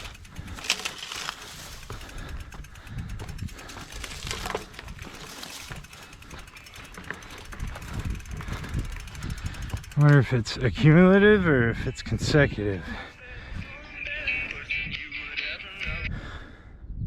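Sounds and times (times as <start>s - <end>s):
bike scuffs rattles and clicks: 0.0s - 10.4s
wind rumble on microphone: 1.6s - 5.8s, 7.3s - 17.0s.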